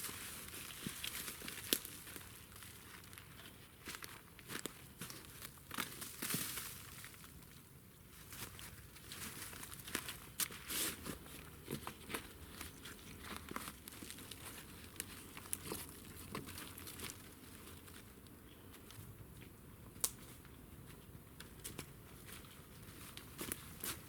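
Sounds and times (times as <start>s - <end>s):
dry material rustling and crackling: 8.4s - 18.1s.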